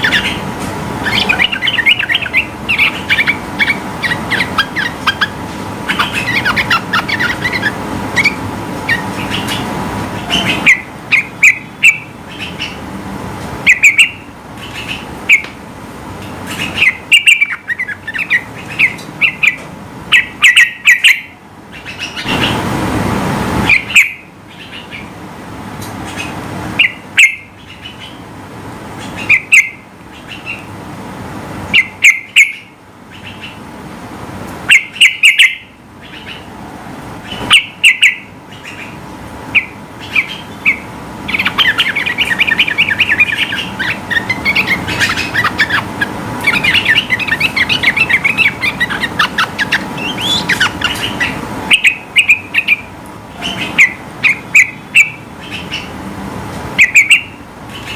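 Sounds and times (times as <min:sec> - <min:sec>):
bird singing bubbling phrases: 0:00.0 - 0:12.8, 0:16.5 - 0:22.6, 0:37.5 - 0:55.9
rushing background noise: 0:00.0 - 0:57.9.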